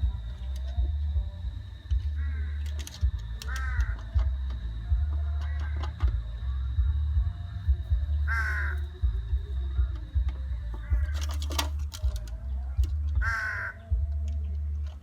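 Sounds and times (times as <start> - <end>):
steady low rumble: 0.0 - 15.0
crow cawing: 2.1 - 2.8, 3.4 - 4.2, 5.4 - 5.9, 8.3 - 8.9, 13.2 - 13.8.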